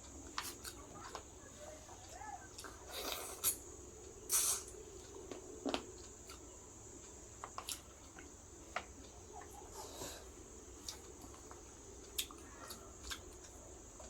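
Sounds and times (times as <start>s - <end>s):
chewing food close up: 10.8s - 14.0s.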